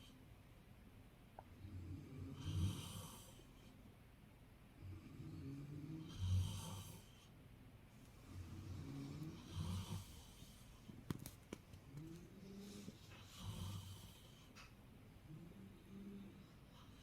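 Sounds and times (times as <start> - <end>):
man snoring: 1.9 - 3.4, 5.1 - 7.1, 8.5 - 10.3, 12.4 - 14.2.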